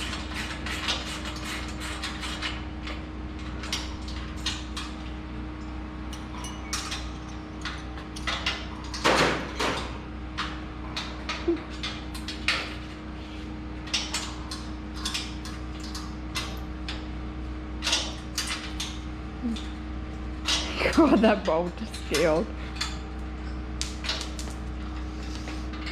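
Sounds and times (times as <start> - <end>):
steady hum: 0.0 - 25.9
hand tools clanking on metal parts: 5.6 - 12.9, 13.8 - 17.0, 20.4 - 25.0.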